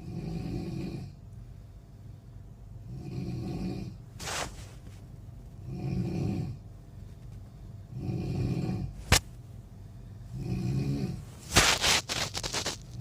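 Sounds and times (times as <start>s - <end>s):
rough snoring: 0.0s - 1.2s, 2.9s - 4.0s, 5.6s - 6.6s, 7.9s - 9.0s, 10.3s - 11.2s
short hiss: 11.5s - 13.0s.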